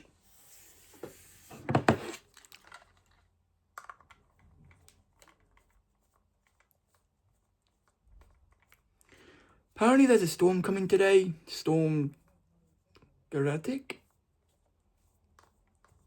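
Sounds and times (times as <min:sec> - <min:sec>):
plastic rustling and clatter: 0:01.5 - 0:09.1.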